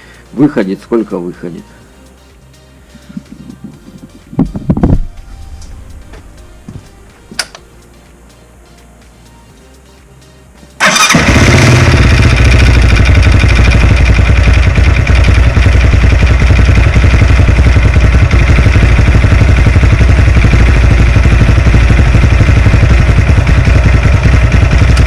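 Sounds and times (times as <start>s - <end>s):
motorcycle engine running: 10.8s - 25.0s.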